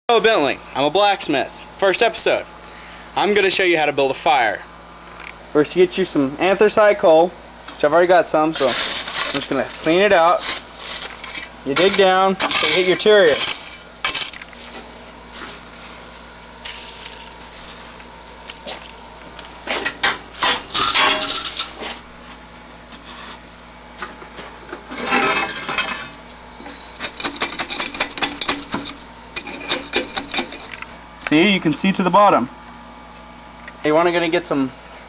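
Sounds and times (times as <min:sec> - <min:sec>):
metal tool scraping coal and ash: 0:08.4 - 0:15.6, 0:16.6 - 0:18.8, 0:19.8 - 0:22.1, 0:25.0 - 0:30.9.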